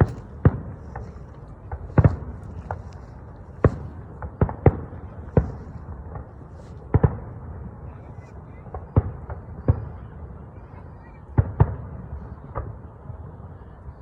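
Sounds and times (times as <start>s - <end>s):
fireworks bangs: 0.0s - 10.4s, 11.2s - 13.4s
steady low rumble: 0.0s - 10.4s.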